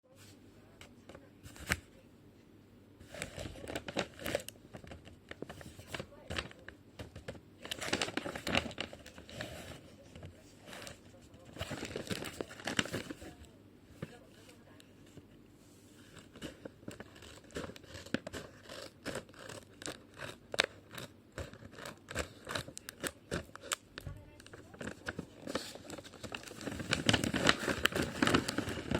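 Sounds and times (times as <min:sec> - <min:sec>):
package crinkling: 0:03.1 - 0:13.5, 0:16.1 - 0:28.9.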